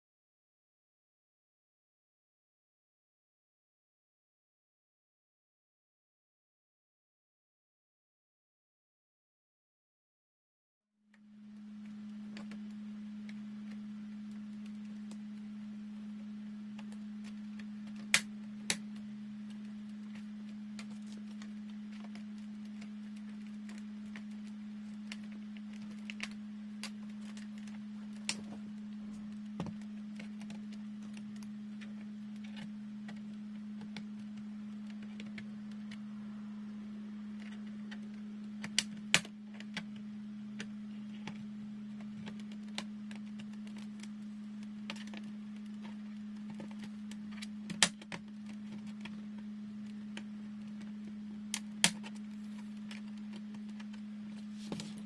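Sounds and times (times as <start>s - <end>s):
steady low hum: 11.0s - 55.0s.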